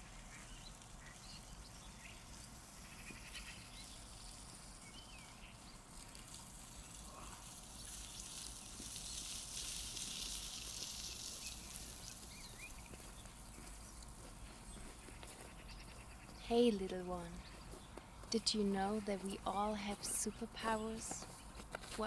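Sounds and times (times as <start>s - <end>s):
steady high hiss: 6.0s - 13.0s.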